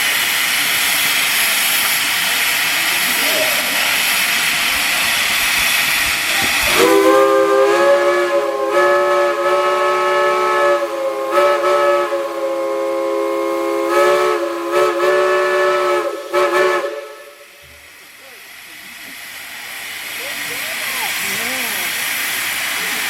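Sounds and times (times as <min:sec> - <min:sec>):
steam hiss: 0:00.0 - 0:23.0
steam whistle chord: 0:06.7 - 0:17.6.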